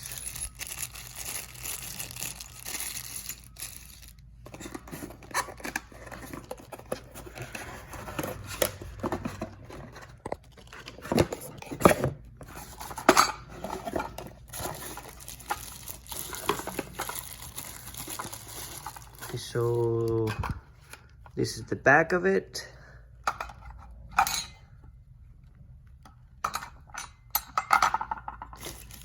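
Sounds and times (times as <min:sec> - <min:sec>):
plastic packaging tearing and crumpling: 0:00.0 - 0:04.2, 0:14.4 - 0:20.3, 0:28.6 - 0:29.0
metal parts clinking and knocking: 0:00.0 - 0:10.1, 0:12.6 - 0:20.6, 0:26.4 - 0:29.0.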